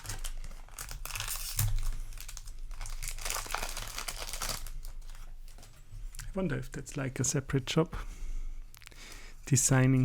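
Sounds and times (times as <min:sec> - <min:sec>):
foil wrapper crinkling: 0:00.0 - 0:05.8.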